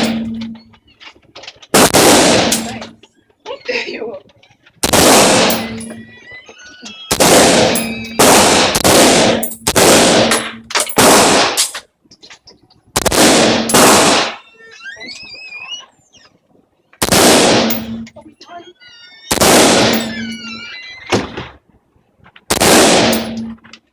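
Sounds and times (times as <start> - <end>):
rifle shots: 0.0 - 0.5, 1.7 - 2.9, 4.8 - 6.0, 7.1 - 11.7, 13.0 - 14.4, 17.0 - 18.1, 19.3 - 20.4, 22.5 - 23.6.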